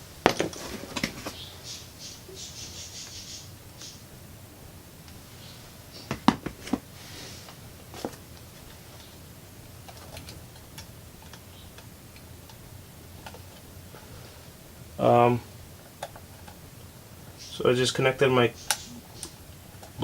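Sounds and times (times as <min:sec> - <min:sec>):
sharp plastic clicks: 0:18.6 - 0:20.0.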